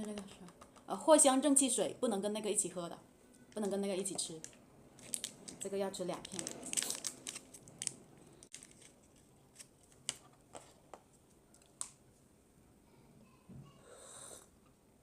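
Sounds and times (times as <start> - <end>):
blister pack clicks and crinkling: 4.4 - 10.2.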